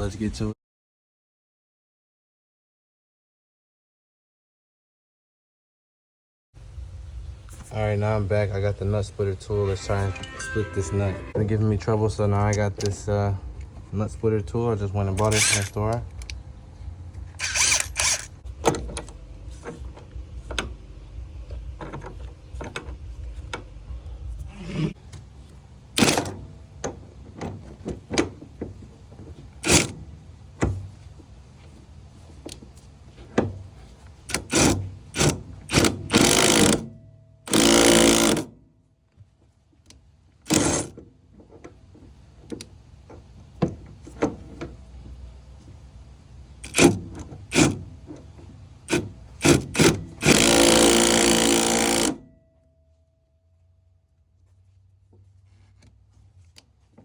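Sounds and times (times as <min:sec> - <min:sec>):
ratchet wrench cranking: 0:17.4 - 0:18.4, 0:34.3 - 0:36.8, 0:37.5 - 0:38.5, 0:46.6 - 0:47.8, 0:48.9 - 0:52.2.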